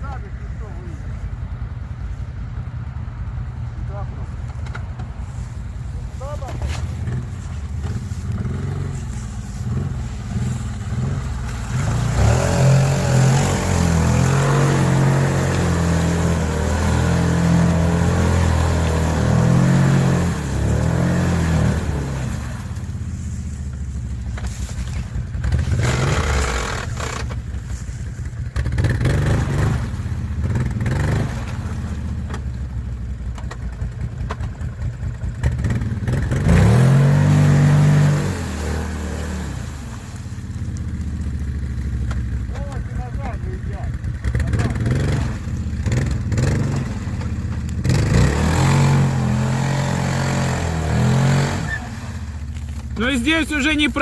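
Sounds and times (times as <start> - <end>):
atv engine revving: 4.6 - 54.0.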